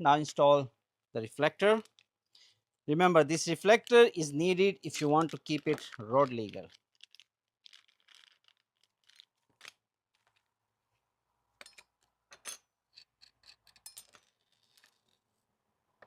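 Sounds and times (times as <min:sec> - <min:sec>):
small plastic parts clicking: 0:01.7 - 0:02.1, 0:04.8 - 0:10.5
light scraping of small parts: 0:04.8 - 0:10.5, 0:11.6 - 0:15.4.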